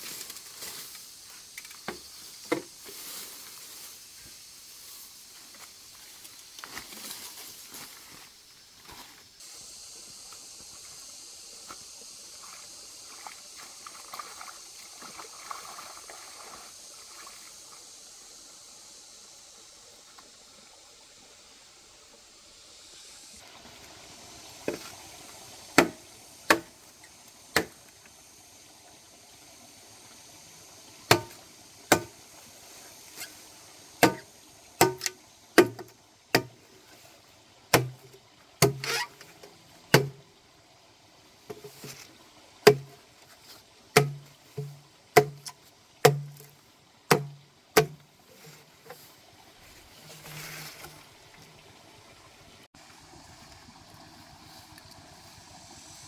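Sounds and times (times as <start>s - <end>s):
steady high hiss: 0.0s - 51.1s
sharp knocks: 31.1s - 32.1s, 34.0s - 36.5s, 40.0s - 40.2s, 42.7s - 43.0s, 44.0s - 45.5s, 46.1s - 46.5s, 47.1s - 48.0s.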